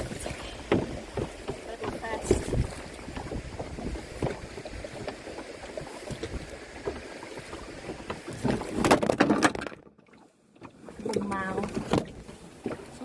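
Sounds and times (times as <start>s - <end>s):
paddle splashing water: 0.0s - 13.0s
small knocks and clatter: 0.3s - 5.4s, 6.2s - 9.9s.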